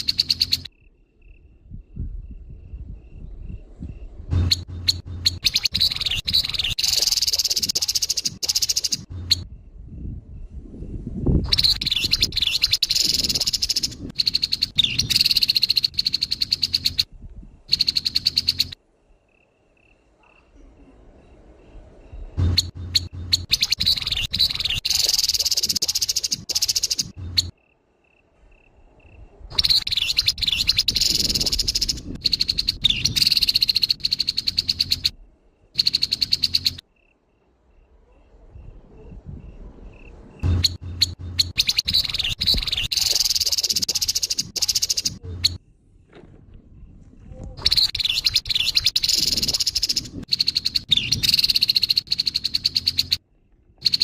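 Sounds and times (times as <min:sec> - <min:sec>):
soft evenly spaced bird notes: 0:00.0 - 0:01.9, 0:04.0 - 0:10.1, 0:11.6 - 0:20.2, 0:21.2 - 0:38.0, 0:40.0 - 0:45.8, 0:47.7 - 0:54.0
bird rasping rattle call: 0:04.4 - 0:09.4, 0:22.4 - 0:27.5, 0:40.5 - 0:45.6.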